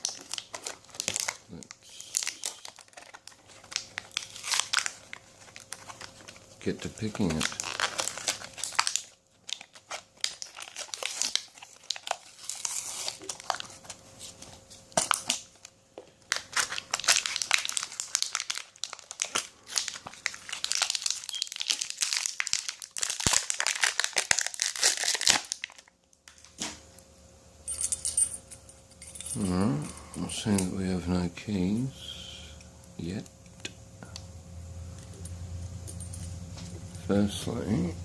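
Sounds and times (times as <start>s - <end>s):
plastic packaging crinkling: 0.0s - 26.6s.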